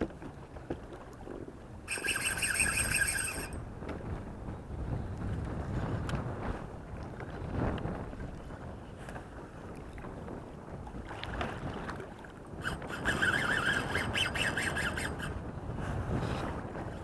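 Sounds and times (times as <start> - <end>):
wind: 0.0 - 17.0
water lapping: 0.7 - 3.6, 9.2 - 17.0
fishing reel whirring and clicking: 1.9 - 3.6, 12.6 - 17.0.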